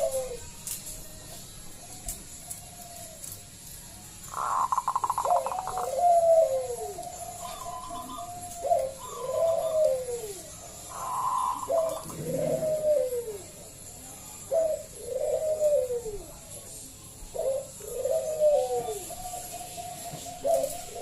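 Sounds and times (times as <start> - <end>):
dove cooing: 0.0 - 0.8, 4.2 - 16.5, 17.3 - 21.0.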